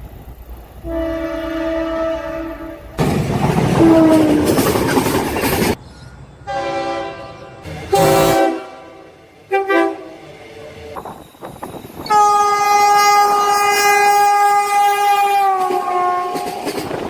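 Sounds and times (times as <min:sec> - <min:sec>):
passing train rush: 0:00.0 - 0:17.0
train horn blasts: 0:00.8 - 0:03.0, 0:03.8 - 0:04.6, 0:06.4 - 0:10.4, 0:12.0 - 0:16.7.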